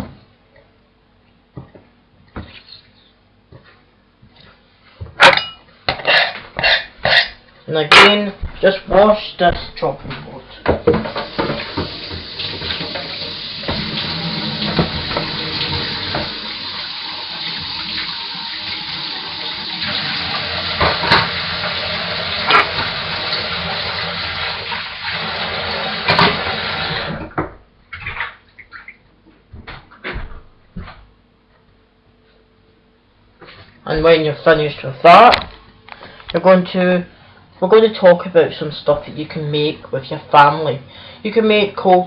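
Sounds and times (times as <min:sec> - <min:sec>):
kitchen tap running: 0:10.9 - 0:28.7.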